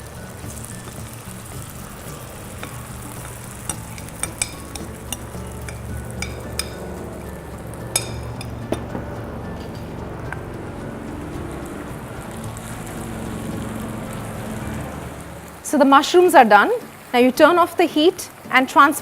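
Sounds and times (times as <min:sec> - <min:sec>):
mushrooms sizzling in hot oil: 0:00.0 - 0:08.8, 0:11.4 - 0:19.0
utensil clicking against pan: 0:02.0 - 0:07.3.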